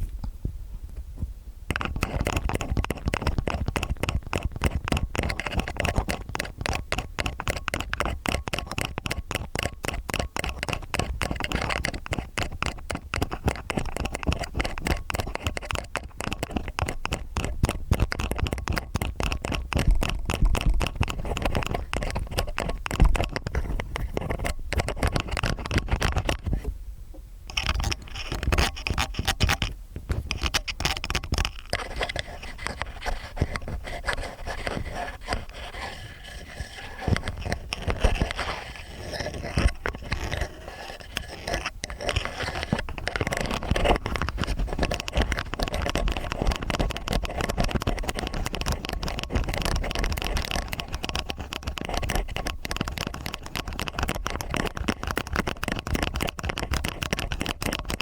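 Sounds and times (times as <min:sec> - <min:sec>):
metal ear picks scraping: 0:01.7 - 0:26.5, 0:27.5 - 0:58.0.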